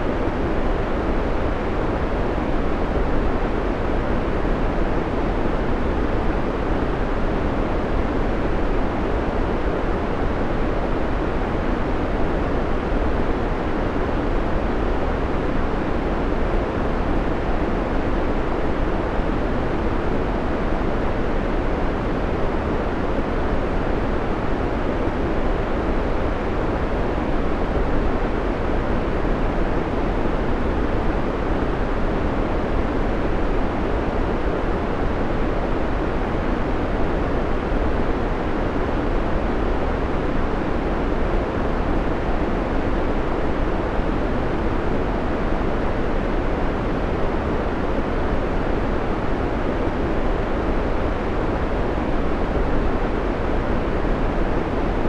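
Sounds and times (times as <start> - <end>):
steady white noise hiss: 0.0 - 55.0.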